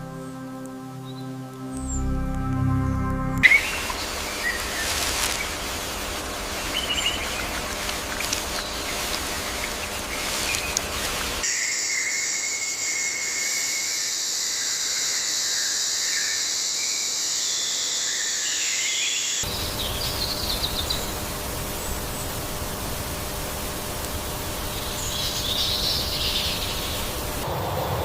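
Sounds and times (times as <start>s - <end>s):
warbling calls: 3.4s - 12.2s
background hiss: 3.4s - 28.0s
high insect drone: 3.4s - 28.0s.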